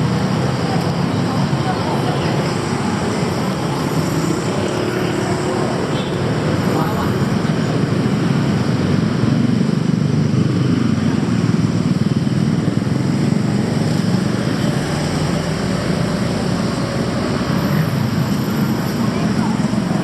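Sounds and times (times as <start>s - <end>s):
traffic rumble: 0.0s - 20.0s.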